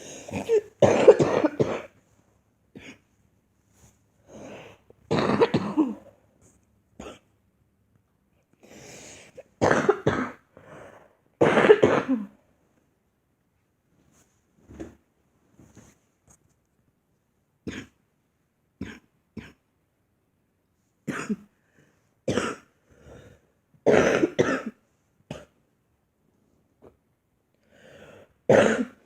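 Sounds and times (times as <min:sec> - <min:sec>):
girl coughing: 0:00.0 - 0:02.0, 0:05.1 - 0:06.1, 0:09.6 - 0:10.4, 0:11.4 - 0:12.4, 0:21.1 - 0:21.5, 0:22.3 - 0:22.7, 0:23.9 - 0:25.6, 0:28.5 - 0:29.0.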